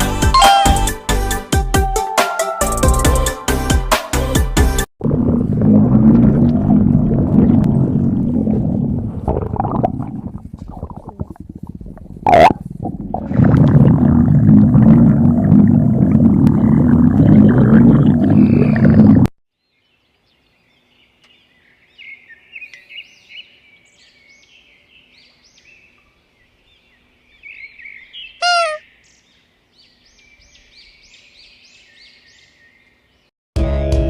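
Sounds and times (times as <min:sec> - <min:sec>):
stomach growling: 0:05.0 - 0:19.3
small birds chirping: 0:19.6 - 0:33.3.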